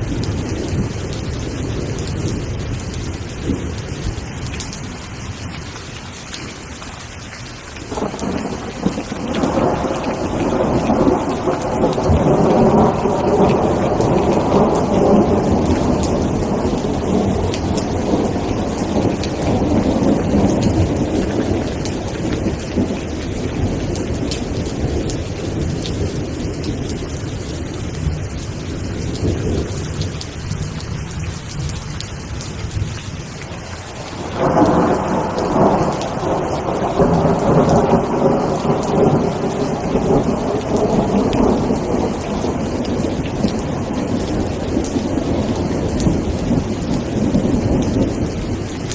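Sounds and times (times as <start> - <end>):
heavy rain: 0.0 - 48.9
thunder rolling: 7.9 - 26.9, 33.9 - 48.6.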